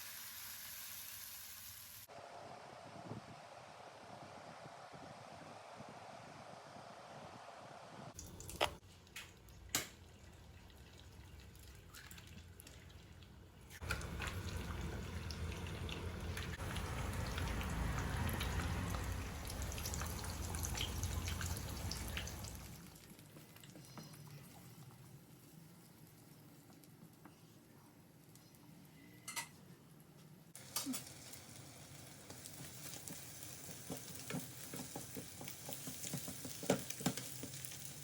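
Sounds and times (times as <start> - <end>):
liquid pouring: 13.8 - 23.8.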